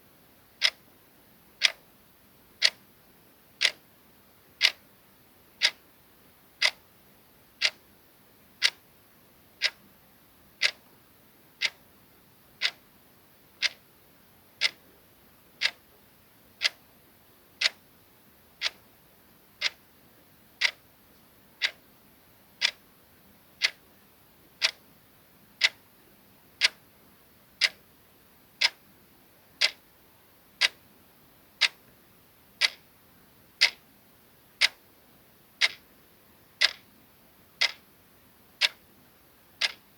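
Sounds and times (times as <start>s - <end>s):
clock ticking: 0.6s - 0.8s, 1.6s - 1.8s, 2.6s - 2.8s, 3.6s - 3.8s, 4.6s - 4.8s, 5.6s - 5.8s, 6.6s - 6.8s, 7.6s - 7.8s, 8.6s - 8.8s, 9.6s - 9.8s, 10.6s - 10.9s, 11.6s - 11.8s, 12.6s - 12.8s, 13.6s - 13.8s, 14.6s - 14.8s, 15.6s - 15.8s, 16.6s - 16.8s, 17.6s - 17.8s, 18.6s - 18.8s, 19.6s - 19.8s, 20.6s - 20.8s, 21.6s - 21.8s, 22.6s - 22.8s, 23.6s - 23.8s, 24.6s - 24.8s, 25.6s - 25.8s, 26.6s - 26.8s, 27.6s - 27.8s, 28.6s - 28.8s, 29.6s - 29.8s, 30.6s - 30.8s, 31.6s - 31.8s, 32.6s - 32.8s, 33.6s - 33.8s, 34.6s - 34.8s, 35.6s - 35.8s, 36.6s - 36.8s, 37.6s - 37.8s, 38.6s - 38.8s, 39.6s - 39.8s.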